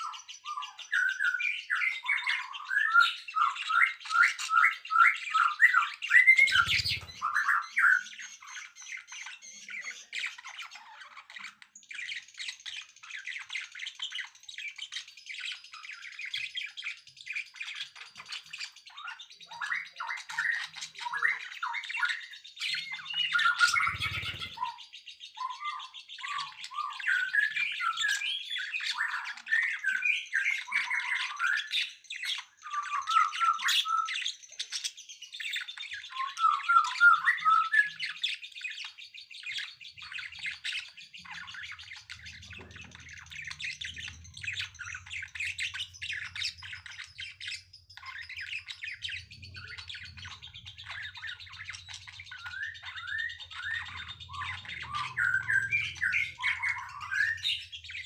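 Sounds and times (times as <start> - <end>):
songbirds chirping: 0.0 - 58.0.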